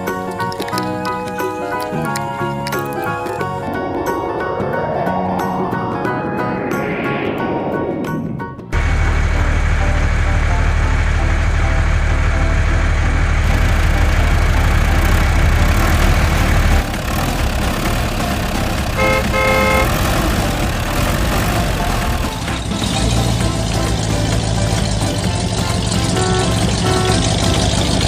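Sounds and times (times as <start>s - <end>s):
vehicle engine rumbling: 0.1s - 28.0s
horn tooting: 18.8s - 20.9s, 25.3s - 28.0s.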